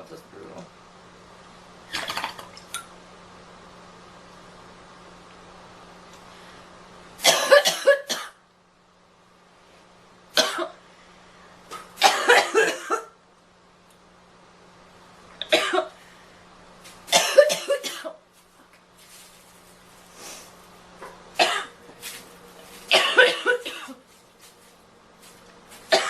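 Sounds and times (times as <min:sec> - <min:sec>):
girl coughing: 0:07.2 - 0:08.4, 0:10.4 - 0:10.8, 0:12.0 - 0:13.2, 0:15.5 - 0:16.0, 0:17.1 - 0:18.2, 0:21.4 - 0:21.8, 0:22.9 - 0:24.0.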